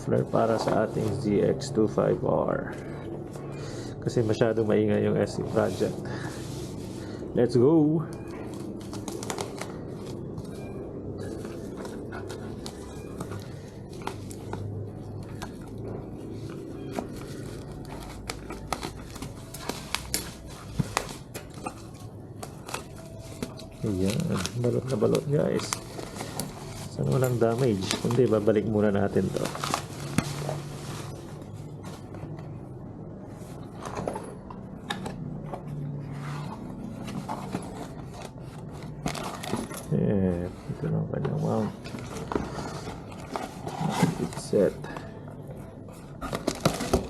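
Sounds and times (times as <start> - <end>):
packaging scraping and rubbing: 8.4 - 32.4, 35.2 - 40.0, 40.6 - 47.0
plastic packaging tearing: 17.1 - 31.2.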